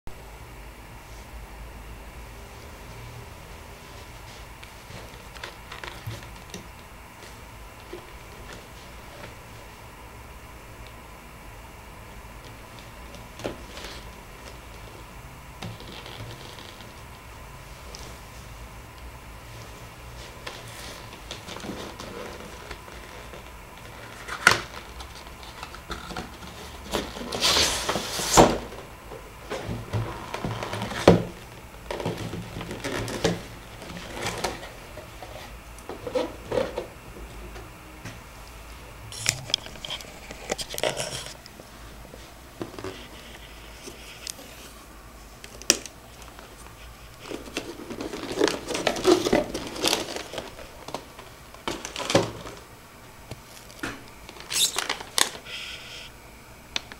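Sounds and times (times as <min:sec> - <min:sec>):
scraping or rustling: 0:19.6 - 0:28.8, 0:29.5 - 0:36.9, 0:39.1 - 0:41.4, 0:46.3 - 0:52.6, 0:54.3 - 0:56.1.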